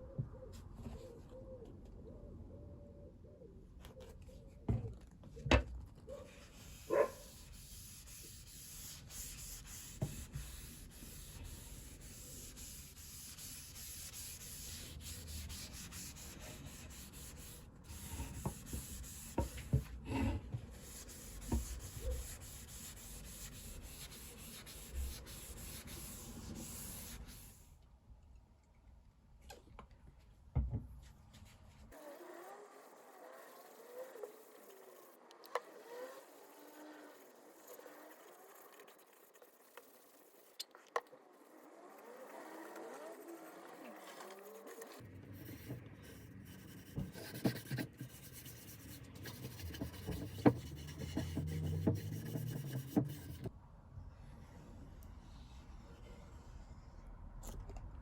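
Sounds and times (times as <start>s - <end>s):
sandpaper rubbing on wood: 6.4s - 19.7s, 20.8s - 27.6s, 44.0s - 53.5s.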